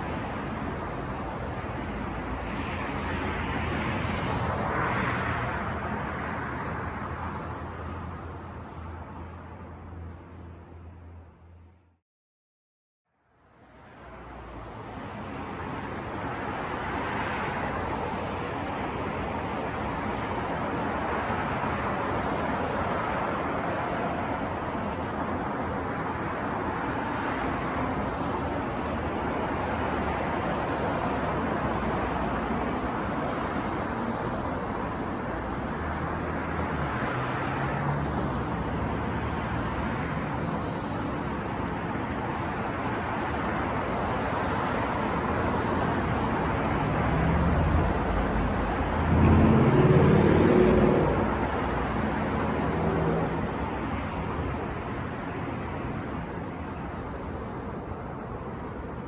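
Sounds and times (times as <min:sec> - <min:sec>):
passing vehicles: 0:00.0 - 0:11.9, 0:13.4 - 0:59.0
loud engine passing close: 0:46.8 - 0:53.8.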